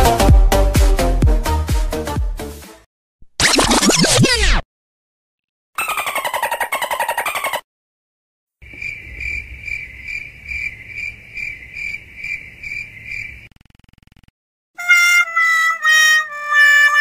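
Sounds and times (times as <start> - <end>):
crickets chirping: 8.6 - 13.5.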